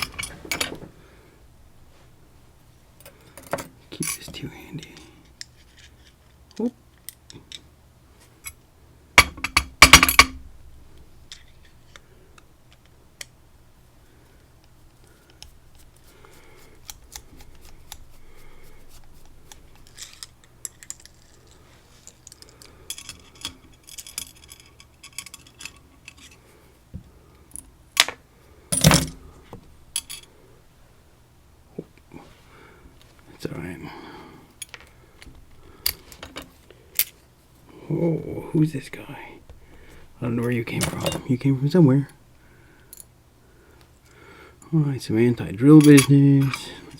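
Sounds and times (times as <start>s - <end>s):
metal lock parts clinking: 0.0s - 0.8s, 19.3s - 26.4s, 40.4s - 41.3s, 45.8s - 46.8s.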